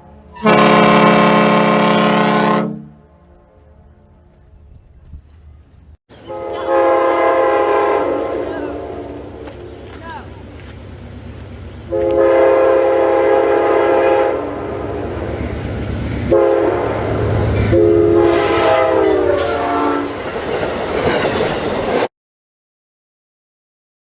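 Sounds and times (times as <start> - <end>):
locomotive air horn chord: 0.0 - 4.2, 6.2 - 9.3, 11.9 - 14.6, 16.3 - 17.1, 17.7 - 20.2
passing train rumble: 0.0 - 22.1.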